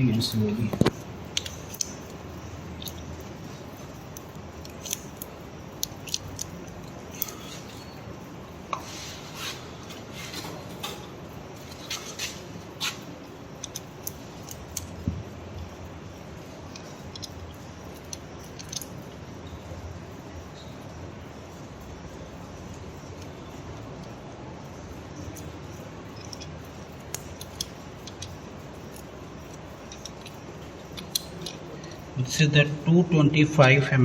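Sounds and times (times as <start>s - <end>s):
steady background hiss: 0.0s - 34.0s
metallic clicks of surgical instruments: 26.2s - 32.1s.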